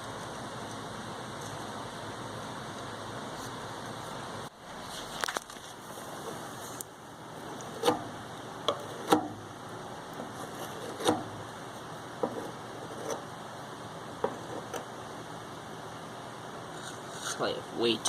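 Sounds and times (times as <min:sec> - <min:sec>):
steady background hiss: 0:00.0 - 0:18.0.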